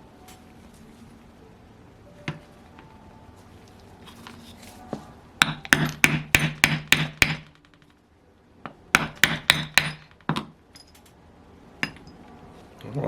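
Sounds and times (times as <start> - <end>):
hammer tapping on metal: 5.4 - 7.8, 8.9 - 10.5.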